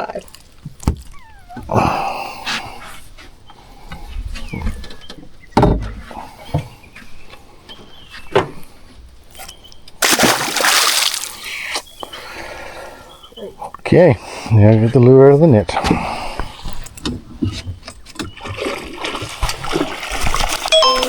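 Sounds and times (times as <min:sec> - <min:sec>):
knocks around a boat: 0:00.6 - 0:01.7, 0:04.6 - 0:06.8
water splashing: 0:10.0 - 0:11.6, 0:18.3 - 0:21.0.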